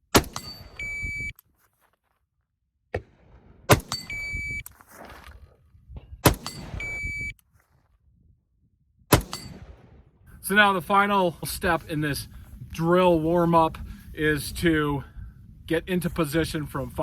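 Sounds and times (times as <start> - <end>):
rifle shots: 0.1 - 1.0, 3.0 - 4.4, 6.2 - 7.2, 9.1 - 10.2
shot timer beeps: 0.7 - 1.3, 3.9 - 4.7, 6.5 - 7.4.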